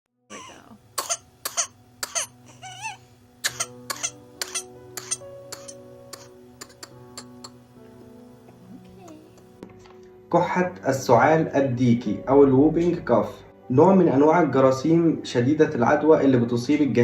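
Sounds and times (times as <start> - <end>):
background music with held tones: 0.2 - 17.0
harsh coughing: 0.3 - 7.6.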